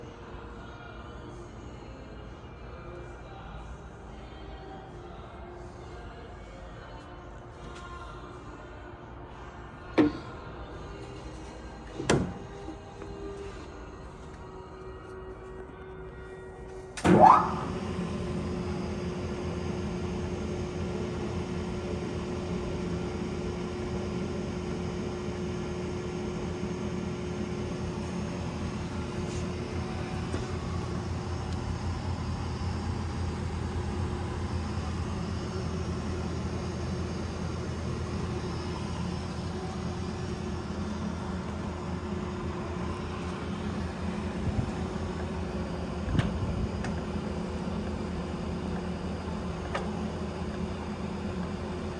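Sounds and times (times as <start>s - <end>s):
spindle drive whine: 16.0s - 51.9s
lathe running: 17.0s - 51.9s.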